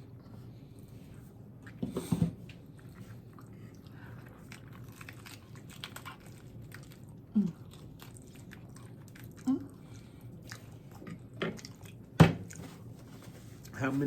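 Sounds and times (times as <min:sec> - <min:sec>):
crunchy chewing: 0:02.6 - 0:12.9.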